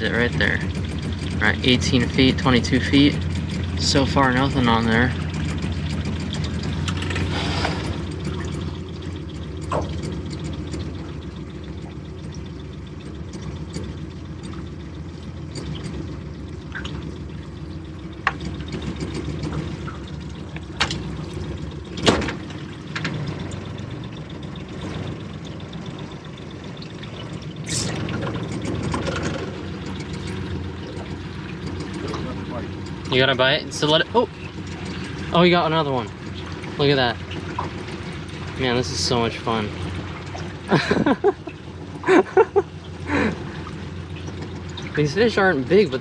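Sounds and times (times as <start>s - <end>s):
low hum: 0.0s - 46.0s
water lapping against a hull: 0.0s - 46.0s
sharp knocks: 9.7s - 10.3s.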